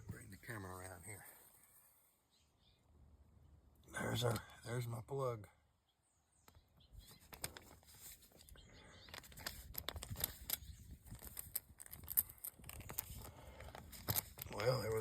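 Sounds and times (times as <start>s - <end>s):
screwdriver clicking and scraping: 9.1s - 15.0s.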